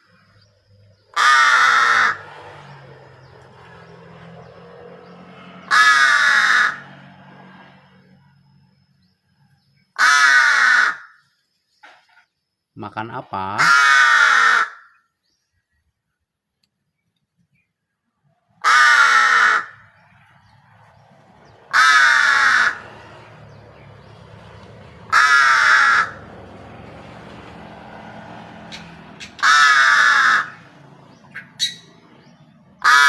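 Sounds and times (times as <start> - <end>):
crow cawing: 1.1 - 2.3, 5.6 - 6.9, 10.0 - 11.2, 13.6 - 15.1, 18.6 - 20.0, 21.7 - 23.0, 25.1 - 26.3, 29.2 - 30.7, 32.8 - 33.0.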